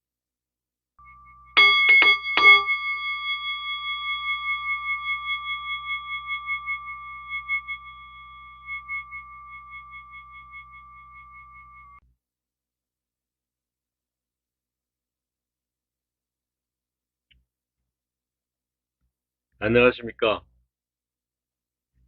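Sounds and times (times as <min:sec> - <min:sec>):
bell-like chime ringing: 0:01.0 - 0:12.0.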